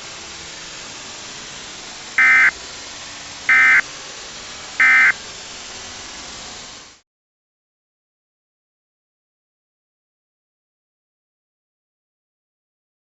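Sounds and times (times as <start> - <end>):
static hiss: 0.0 - 7.0
digital data squawks: 2.2 - 2.5, 3.5 - 3.8, 4.8 - 5.2.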